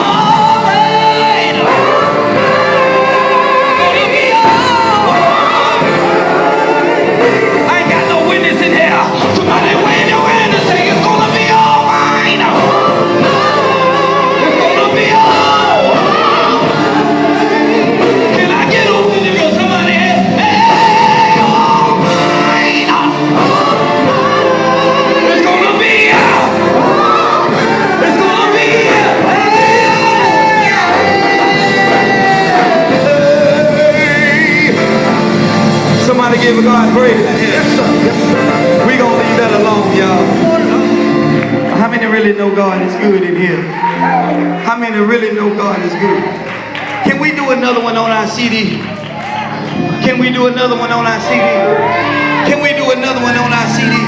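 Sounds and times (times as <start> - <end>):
male vocal group singing: 0.0 - 43.0
backing band playing: 0.0 - 54.0.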